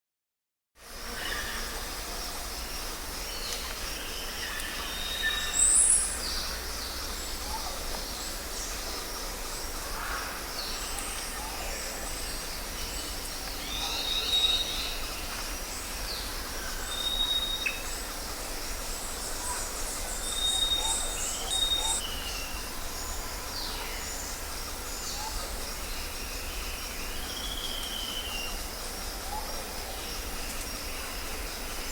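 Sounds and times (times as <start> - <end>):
background hiss: 0.8 - 31.9
bird calls: 19.1 - 22.7.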